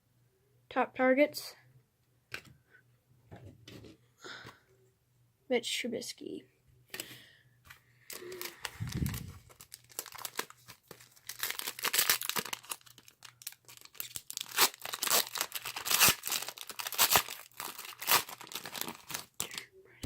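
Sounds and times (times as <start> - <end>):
foil wrapper tearing and crinkling: 8.1 - 19.6.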